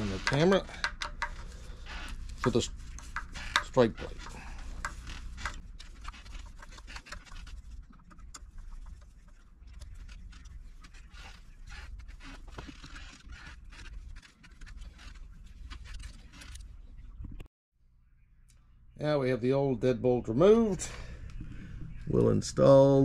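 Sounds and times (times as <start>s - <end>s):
screwdriver scraping metal: 0.0s - 7.6s.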